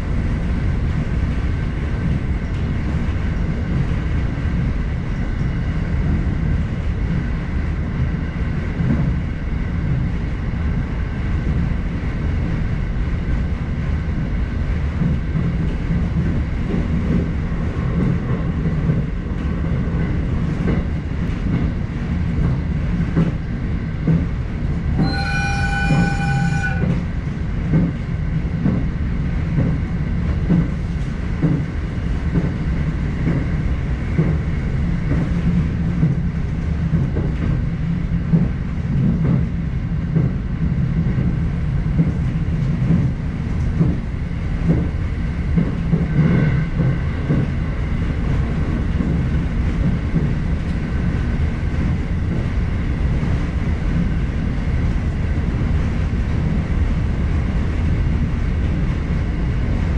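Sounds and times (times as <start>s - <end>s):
train rumble inside car: 0.0s - 59.9s
high-pitched wheel squeal: 25.0s - 27.0s.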